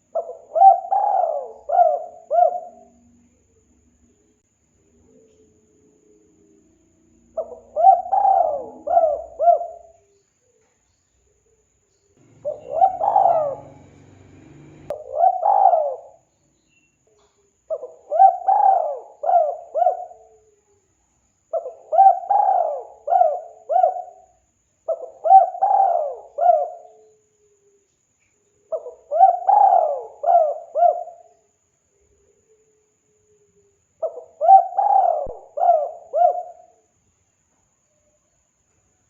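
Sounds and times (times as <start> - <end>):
dove cooing: 0.0 - 3.1, 7.3 - 10.1, 12.2 - 16.2, 17.7 - 20.5, 21.5 - 24.3, 24.9 - 27.0, 28.7 - 31.3, 34.0 - 36.7.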